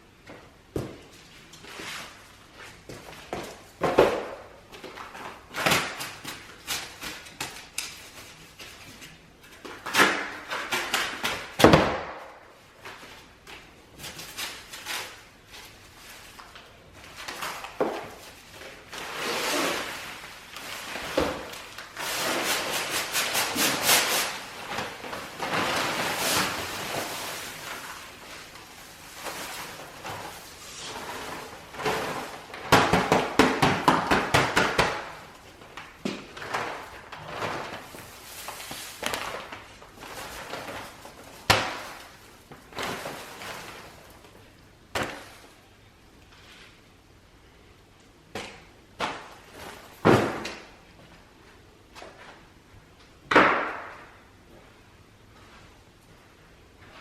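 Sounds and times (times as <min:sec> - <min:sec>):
dry mix pouring and scraping: 0:24.6 - 0:32.6.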